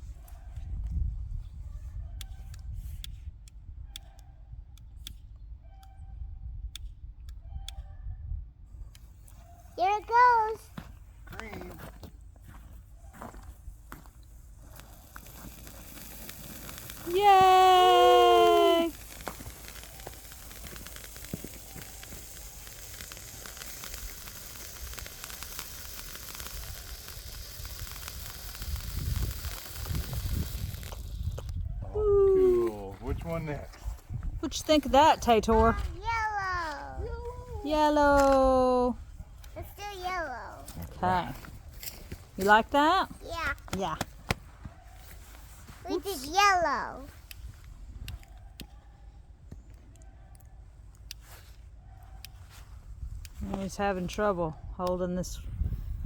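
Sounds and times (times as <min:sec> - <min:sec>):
wind rumbling on microphone: 0:00.0 - 0:04.8, 0:13.4 - 0:39.8, 0:52.7 - 0:56.0
smoke bomb hissing and crackling: 0:09.0 - 0:50.1, 0:51.0 - 0:54.4
sharp clicks: 0:14.1 - 0:31.7.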